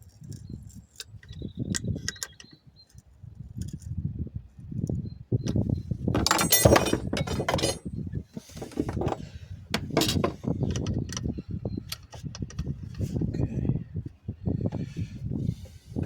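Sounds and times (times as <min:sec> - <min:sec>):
short rapid rattle: 0:06.2 - 0:07.9
metal tools clinking: 0:06.2 - 0:10.5.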